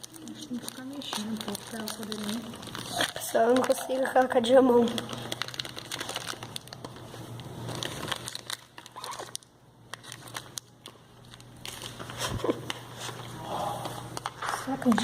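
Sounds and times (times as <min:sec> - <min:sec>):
slime crinkling and clicking: 0:00.0 - 0:12.8.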